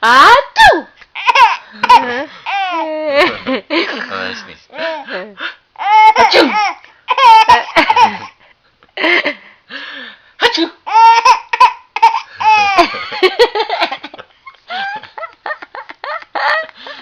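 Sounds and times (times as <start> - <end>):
baby laughing: 1.2 - 3.4, 5.8 - 8.4, 10.9 - 14.1, 14.7 - 16.9
person saying achoo: 3.2 - 5.4.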